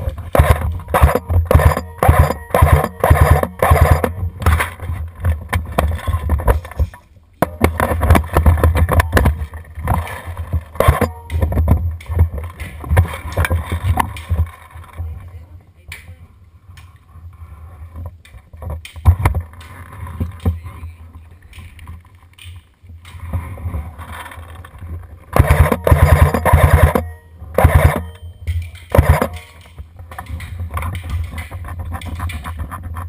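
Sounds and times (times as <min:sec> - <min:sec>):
airsoft guns firing bursts: 0:00.3 - 0:04.8, 0:07.5 - 0:13.2, 0:25.3 - 0:31.6.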